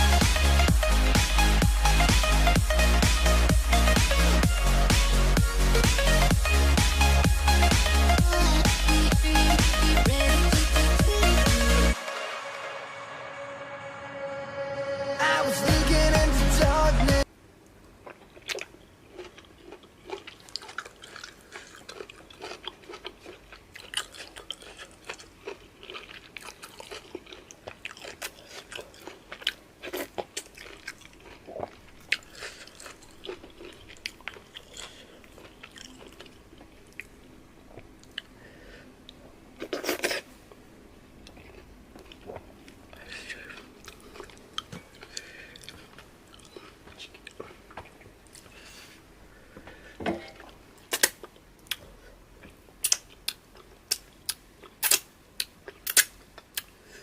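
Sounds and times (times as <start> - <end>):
chewing and wet mouth smacks: 18.0 - 38.3, 41.2 - 42.8.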